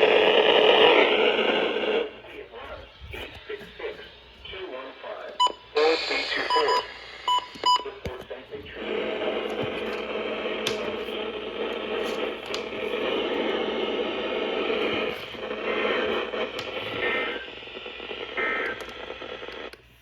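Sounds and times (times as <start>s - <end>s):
radio static hiss: 0.0s - 20.0s
faint crackles and clicks: 9.8s - 19.9s.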